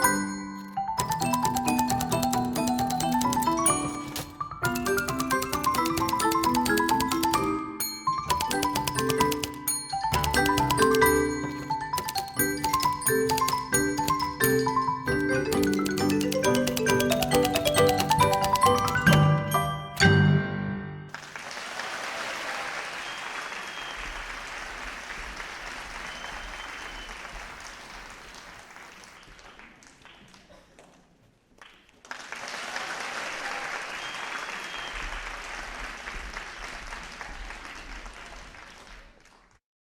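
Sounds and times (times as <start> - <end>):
mallet percussion notes: 0.0 - 21.0
audience applause: 21.1 - 30.9, 31.6 - 39.6.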